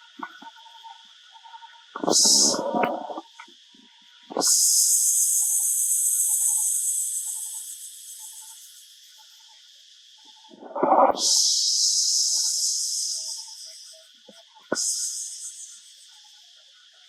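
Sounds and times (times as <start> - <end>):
loud high-pitched hiss: 2.0 - 3.2, 4.4 - 8.8, 11.0 - 14.0, 14.7 - 16.1.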